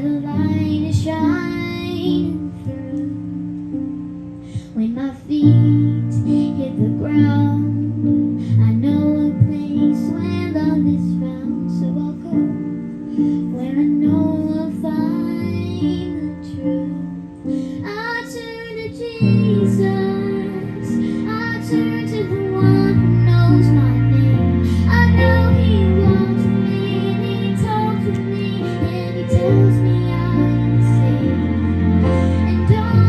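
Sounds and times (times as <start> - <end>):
young female voices singing: 17.8 - 33.0.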